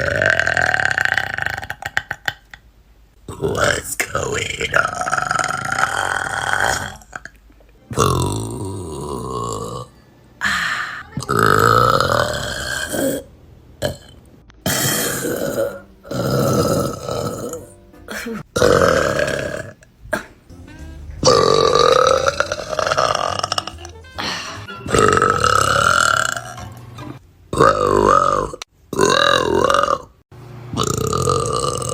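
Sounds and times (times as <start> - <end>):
women belching loudly: 0.0 - 2.4, 11.0 - 20.5, 21.1 - 26.6
music playing: 15.0 - 27.2.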